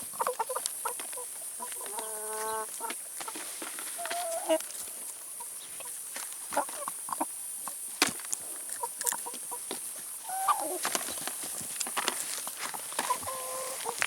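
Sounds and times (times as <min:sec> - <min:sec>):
chickens clucking: 0:00.0 - 0:14.0
chickens pecking taps: 0:08.0 - 0:14.0.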